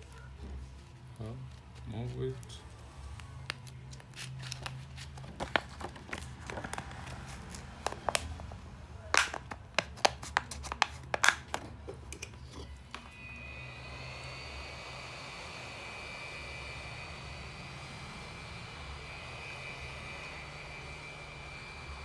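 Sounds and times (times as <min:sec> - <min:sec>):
whining hiss: 0:13.0 - 0:22.0.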